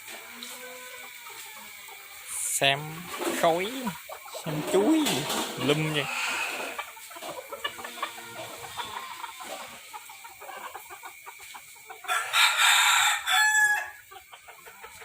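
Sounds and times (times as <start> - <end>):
chickens clucking: 0.0 - 15.0
cockerel crowing: 2.8 - 9.8, 11.9 - 15.0.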